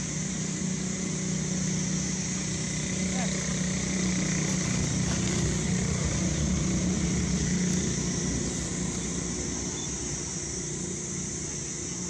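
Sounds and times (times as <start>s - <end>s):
constant high hiss: 0.0s - 12.0s
vehicle engine humming: 0.0s - 12.0s.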